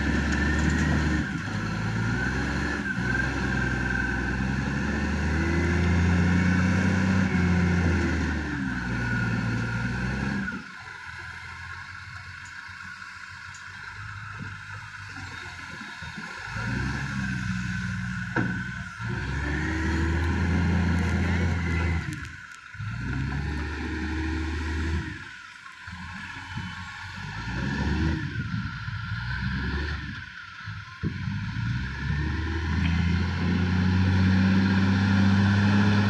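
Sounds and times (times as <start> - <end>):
heavy diesel engine revving: 0.0 - 36.0.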